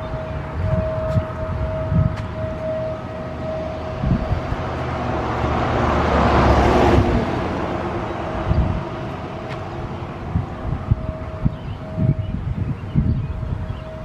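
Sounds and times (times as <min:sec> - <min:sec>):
distant warning siren tone: 0:00.0 - 0:14.0
car driving past: 0:02.6 - 0:10.4.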